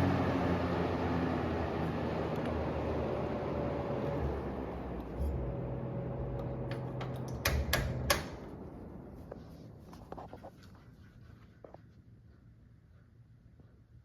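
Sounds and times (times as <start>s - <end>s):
box fan motor hum and airflow: 0.0s - 10.4s
fan speed control clicks: 2.2s - 2.7s, 6.2s - 8.6s.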